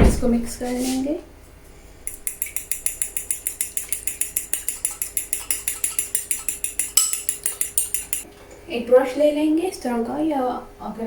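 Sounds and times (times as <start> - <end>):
utensil clinking against bowl: 2.1 - 8.3.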